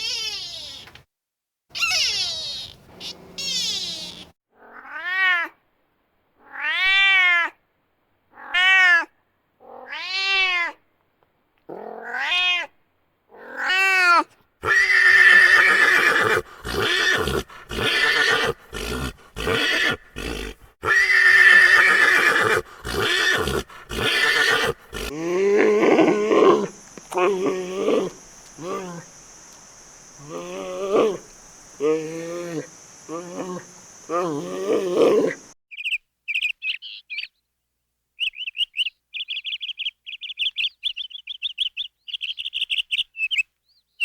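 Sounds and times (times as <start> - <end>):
animal cries rising and falling: 0.0 - 1.0, 1.7 - 5.6, 6.4 - 7.6, 8.4 - 10.8, 11.7 - 12.7, 13.3 - 35.5.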